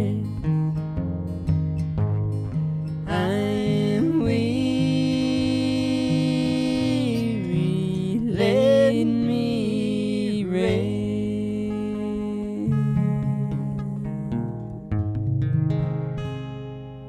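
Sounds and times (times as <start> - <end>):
man and woman singing in harmony: 0.0 - 0.3, 3.1 - 14.4
acoustic guitar: 0.0 - 17.0.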